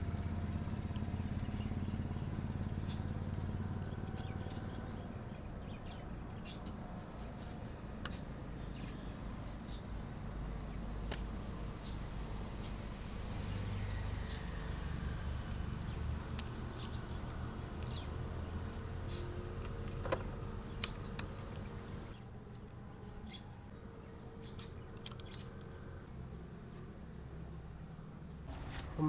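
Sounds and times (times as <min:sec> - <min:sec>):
bicycle parts clicking and tapping: 0:24.4 - 0:25.7.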